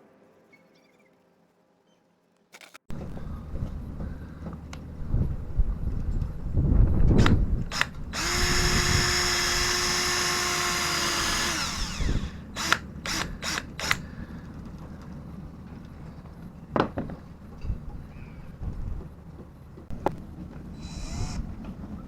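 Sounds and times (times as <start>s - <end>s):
power drill running: 7.2s - 14.0s, 20.8s - 21.5s.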